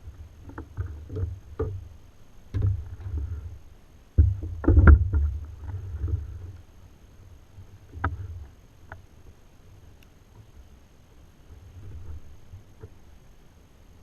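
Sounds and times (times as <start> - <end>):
thumps on plastic kayak hull: 2.5 - 3.4, 4.2 - 6.3.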